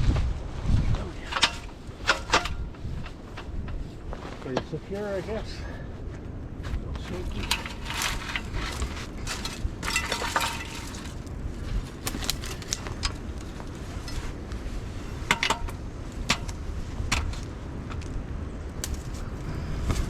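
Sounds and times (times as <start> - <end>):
wind rumbling on microphone: 0.0 - 20.0
sharp clicks and rattles: 1.2 - 3.8, 7.1 - 14.3.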